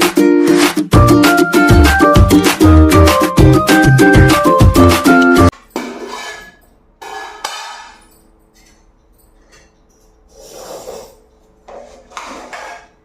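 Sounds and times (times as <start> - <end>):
metal dishes clattering: 5.5 - 13.0.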